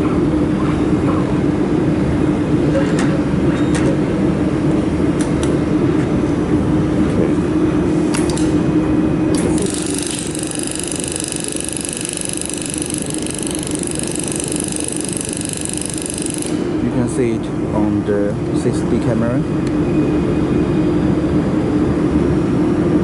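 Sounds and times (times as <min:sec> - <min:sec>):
machine fan steady hum: 0:00.0 - 0:23.0
high-pitched whine: 0:08.6 - 0:23.0.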